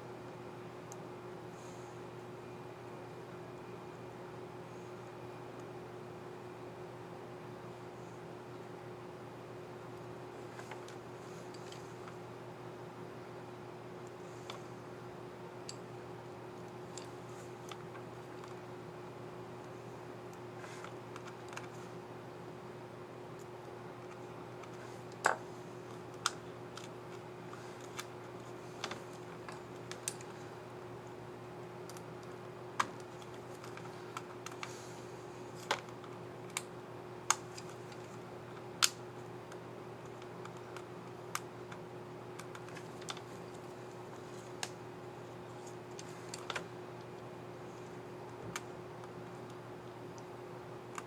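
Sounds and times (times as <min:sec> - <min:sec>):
faint steady hum: 0:00.0 - 0:51.0.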